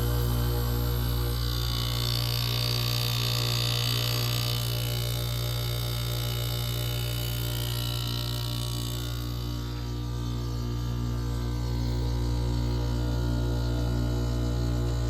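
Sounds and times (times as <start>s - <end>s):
air conditioner humming: 0.0s - 4.3s.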